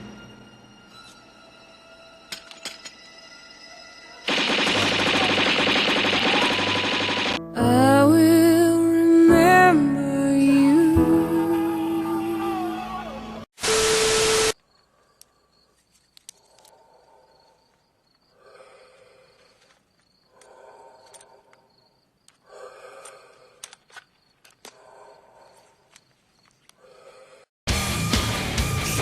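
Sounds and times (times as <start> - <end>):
crickets chirping: 14.6 - 27.5
soft pitched breathing: 18.3 - 23.7, 26.7 - 27.5.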